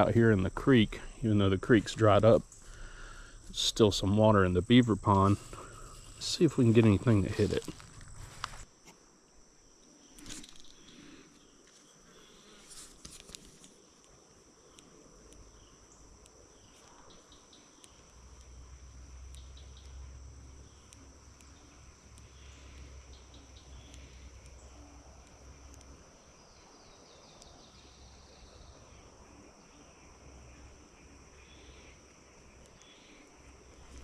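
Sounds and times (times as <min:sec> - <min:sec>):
insects chirring: 0:00.0 - 0:34.0
faint clicks and rustles: 0:05.3 - 0:09.0, 0:10.2 - 0:15.4.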